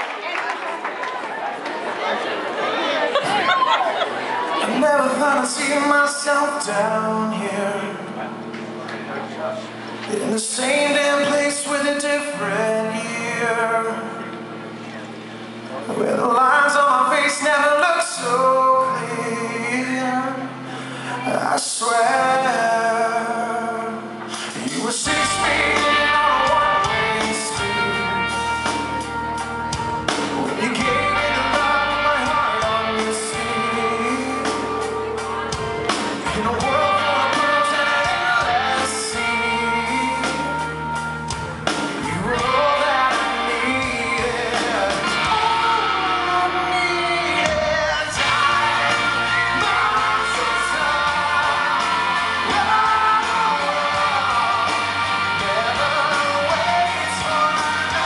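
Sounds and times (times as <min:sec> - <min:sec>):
man singing: 0:04.6 - 0:08.5, 0:10.1 - 0:14.4, 0:15.8 - 0:29.2, 0:30.2 - 0:35.2, 0:36.2 - 0:41.0, 0:42.0 - 0:58.0
live rock band playing: 0:04.6 - 0:58.0.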